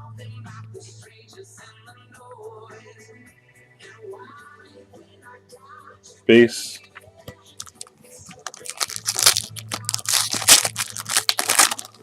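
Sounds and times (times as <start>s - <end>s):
foil wrapper tearing and crinkling: 7.6s - 12.0s.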